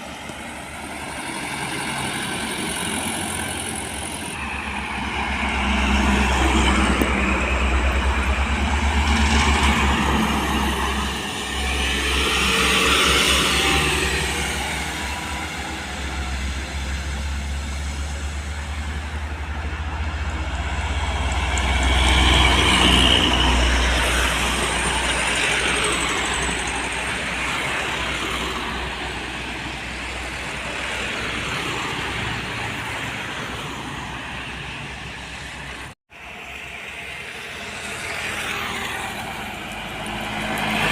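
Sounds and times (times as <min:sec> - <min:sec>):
vehicles passing: 0:00.0 - 0:40.9.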